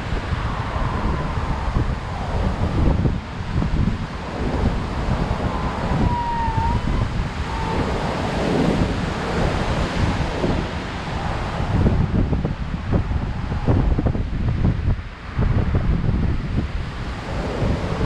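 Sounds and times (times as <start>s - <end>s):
surf breaking on a beach: 0.0s - 18.0s
wind buffeting microphone: 0.0s - 18.0s
faint whistle-like tone: 5.5s - 7.8s.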